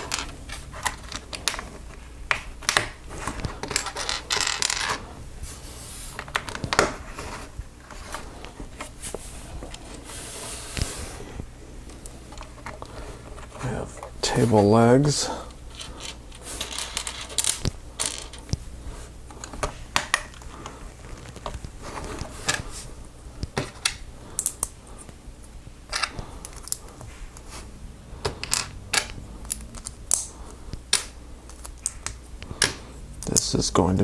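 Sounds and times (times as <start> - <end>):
plastic pieces snapping together: 28.2 - 33.5.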